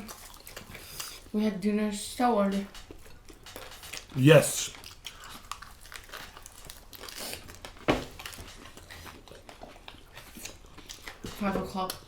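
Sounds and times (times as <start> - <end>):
chewing and crunching: 0.0 - 1.4, 2.4 - 12.0.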